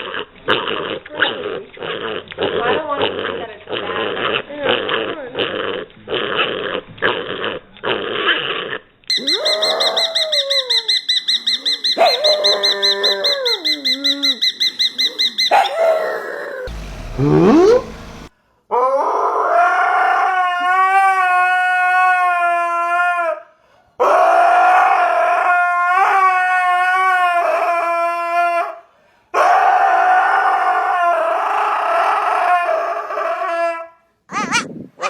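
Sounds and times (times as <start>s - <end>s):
dog howling: 9.1s - 18.2s, 24.0s - 28.8s.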